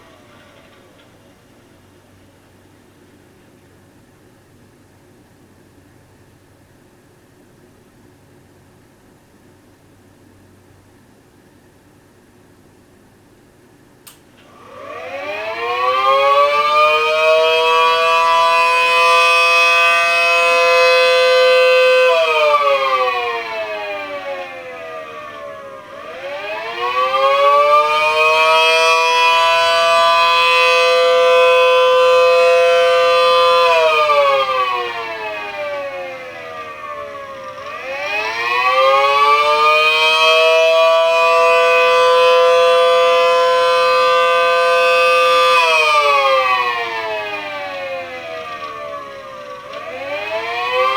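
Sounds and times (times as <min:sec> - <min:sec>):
siren wailing two-tone chord: 0:14.6 - 0:50.9.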